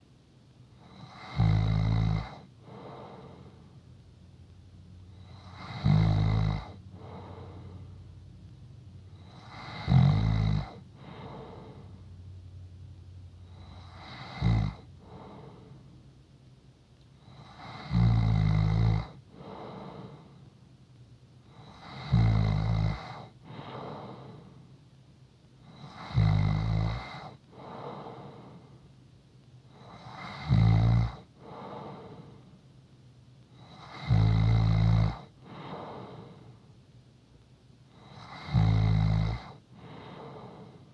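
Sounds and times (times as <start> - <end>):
soft breath: 2.3 - 4.0, 6.7 - 8.3, 10.7 - 12.4, 14.9 - 16.2, 19.3 - 20.7, 23.1 - 25.0, 27.1 - 29.0, 31.2 - 32.8, 35.2 - 36.9, 39.4 - 40.9
person snoring: 5.2 - 7.8, 9.3 - 11.9, 13.6 - 15.7, 17.4 - 20.2, 21.7 - 24.5, 25.8 - 28.6, 29.8 - 32.3, 33.7 - 36.4, 38.0 - 40.8.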